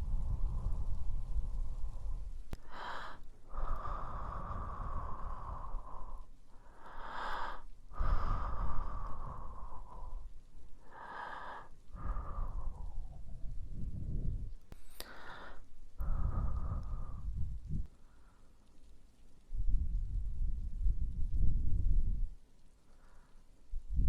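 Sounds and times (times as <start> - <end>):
breathing onto microphone: 1.8 - 13.2, 13.8 - 18.5.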